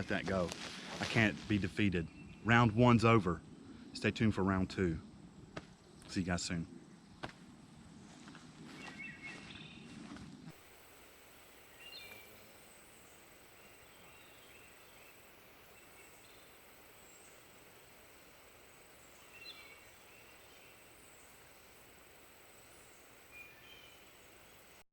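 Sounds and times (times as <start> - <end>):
low hiss: 0.0 - 8.0, 10.5 - 24.9
high-pitched insect drone: 10.6 - 24.7
bird chirps: 11.6 - 22.0, 22.6 - 24.7.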